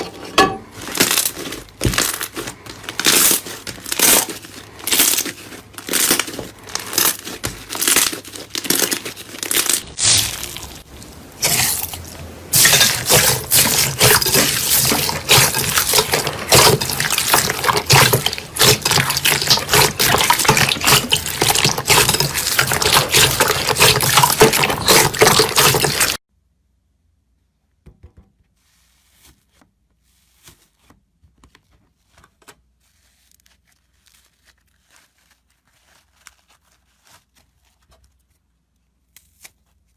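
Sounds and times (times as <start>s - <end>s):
slime crackling and squishing: 0.6s - 26.2s, 32.8s - 38.4s.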